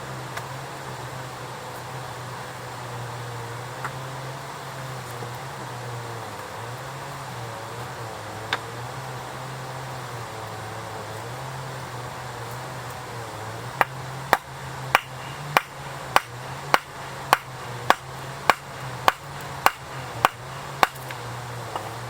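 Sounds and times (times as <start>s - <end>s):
low hum: 0.0s - 22.0s
sharp knocks: 13.8s - 21.9s.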